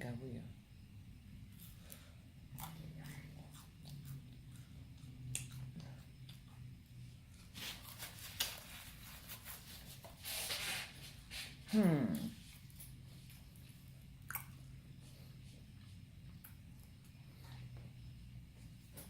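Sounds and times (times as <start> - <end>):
food being bitten and chewed: 1.5 - 10.1, 12.4 - 18.1.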